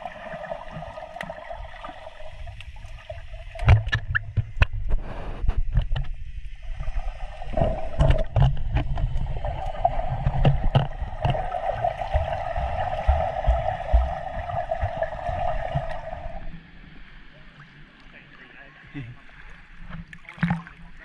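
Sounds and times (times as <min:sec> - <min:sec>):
water sloshing and gurgling: 0:00.0 - 0:21.0
steady mid-pitched hum: 0:06.0 - 0:19.2
knocks and low thumps: 0:10.2 - 0:16.2.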